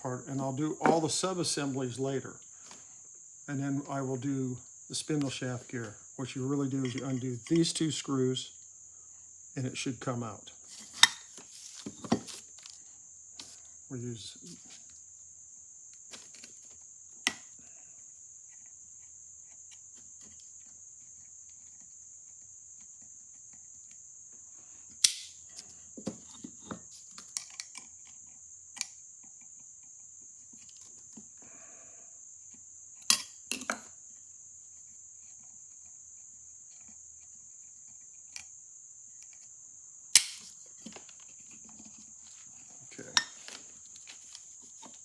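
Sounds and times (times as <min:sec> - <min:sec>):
high-pitched hiss: 0:00.0 - 0:18.4, 0:24.5 - 0:27.4, 0:40.0 - 0:41.4.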